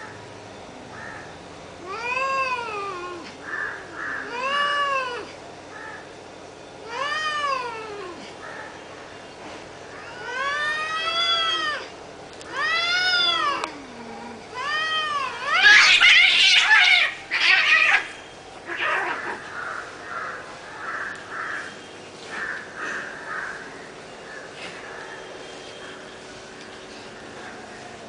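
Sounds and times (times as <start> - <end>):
cats wailing softly: 1.8 - 5.4, 6.8 - 8.4, 9.9 - 19.8
cats yowling: 1.8 - 6.0, 6.8 - 8.3, 9.9 - 19.9
cat screeching: 12.5 - 13.8, 14.5 - 19.5.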